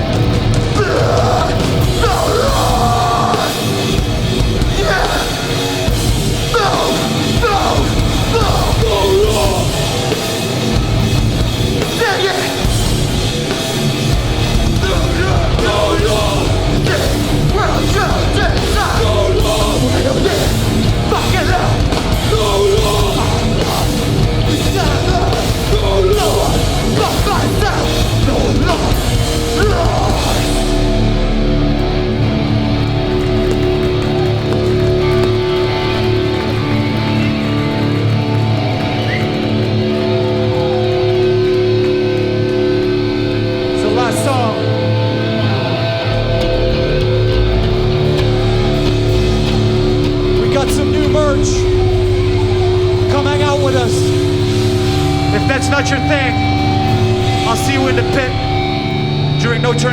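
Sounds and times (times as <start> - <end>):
hardcore band playing live: 0.0 - 59.9
shouted vocals: 0.0 - 59.9.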